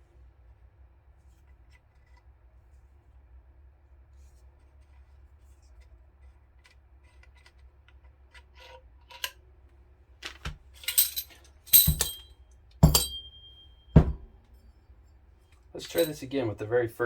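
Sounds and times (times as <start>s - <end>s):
metallic clinks and knocks: 10.2s - 14.4s, 15.8s - 16.3s.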